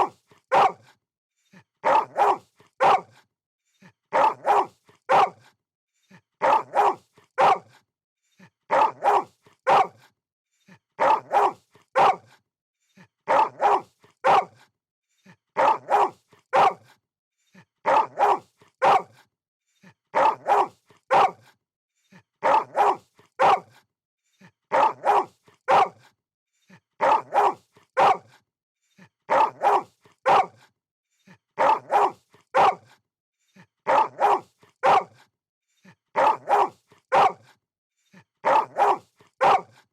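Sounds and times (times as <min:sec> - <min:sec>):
dog barking: 0:00.0 - 0:00.9, 0:01.8 - 0:03.2, 0:04.1 - 0:05.5, 0:06.4 - 0:07.8, 0:08.7 - 0:10.1, 0:11.0 - 0:12.4, 0:13.3 - 0:14.6, 0:15.6 - 0:16.9, 0:17.8 - 0:19.2, 0:20.1 - 0:21.6, 0:22.4 - 0:23.8, 0:24.7 - 0:26.1, 0:27.0 - 0:28.4, 0:29.3 - 0:30.7, 0:31.6 - 0:33.0, 0:33.8 - 0:35.3, 0:36.2 - 0:37.6, 0:38.4 - 0:39.9.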